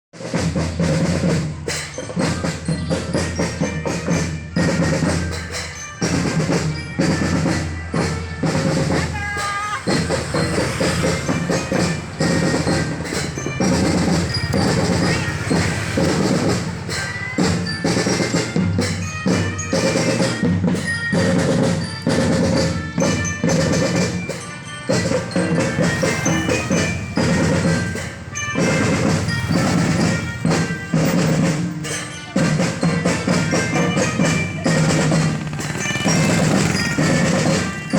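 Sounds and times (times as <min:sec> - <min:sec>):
snare drums and rolls: 0:00.2 - 0:37.9
glockenspiel melody: 0:00.8 - 0:37.9
bass drums beating: 0:06.1 - 0:24.2.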